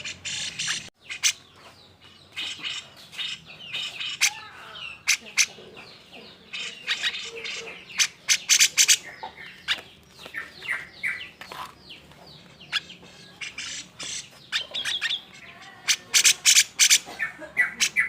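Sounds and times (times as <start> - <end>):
bulbul chattering and whistling: 0.0 - 1.5, 6.4 - 11.4, 12.7 - 18.0
sharp bird calls: 0.0 - 18.0.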